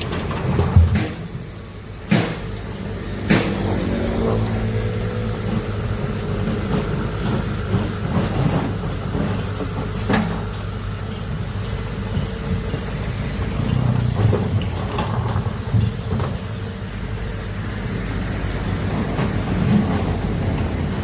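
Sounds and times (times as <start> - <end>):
excavator diesel engine running: 0.0 - 21.0.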